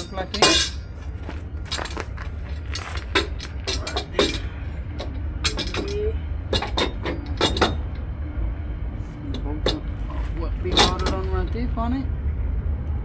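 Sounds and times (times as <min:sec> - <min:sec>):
metallic clinks of steel parts: 0:00.0 - 0:00.9, 0:01.7 - 0:08.0, 0:10.7 - 0:11.6
steady low rumble: 0:00.0 - 0:13.0.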